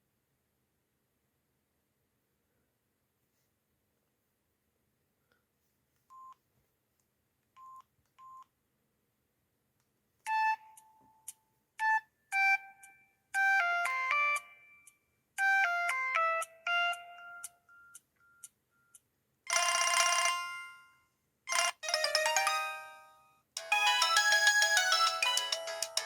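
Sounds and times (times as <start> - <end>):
phone ringtone melody: 13.4 - 14.7, 15.4 - 18.0, 19.5 - 20.9, 21.5 - 26.0.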